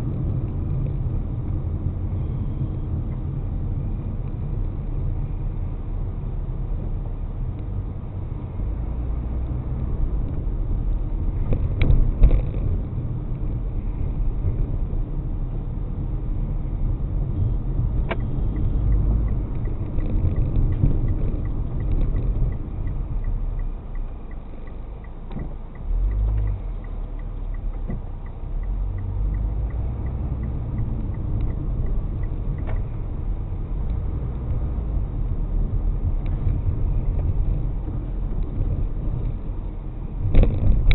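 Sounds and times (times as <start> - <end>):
road and engine rumble: 0.0 - 40.9
faint regular ticking: 18.1 - 33.2.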